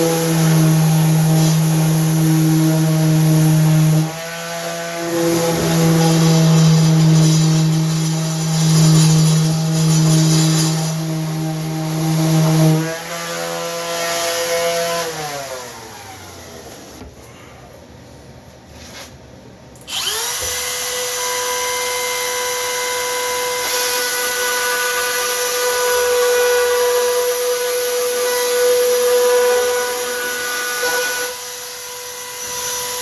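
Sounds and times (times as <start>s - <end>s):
power tool motor humming: 19.9s - 33.0s.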